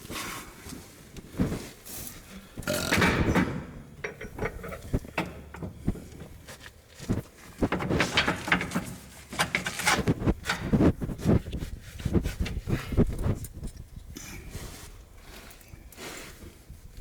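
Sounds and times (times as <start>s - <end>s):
scraping metal rattle: 2.6s - 6.6s, 7.3s - 10.9s
metal clanks and knocks: 2.6s - 11.1s.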